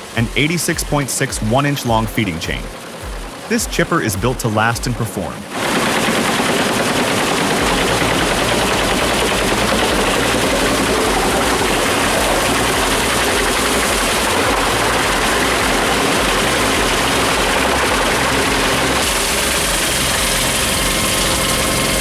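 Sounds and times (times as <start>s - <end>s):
low engine rumble: 6.9s - 22.0s.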